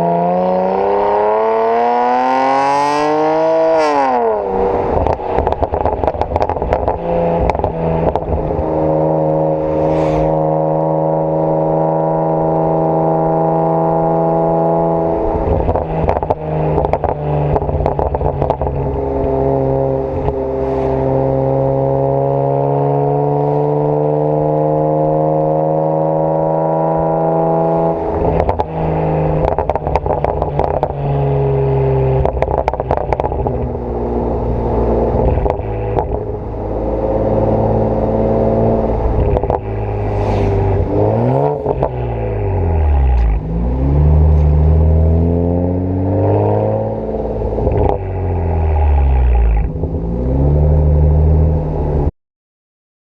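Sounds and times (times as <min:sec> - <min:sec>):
car engine revving: 0:00.0 - 0:52.1
exhaust crackles and pops: 0:05.0 - 0:08.6, 0:15.4 - 0:19.4, 0:28.1 - 0:34.5, 0:35.1 - 0:36.7, 0:38.9 - 0:45.3, 0:47.1 - 0:50.1.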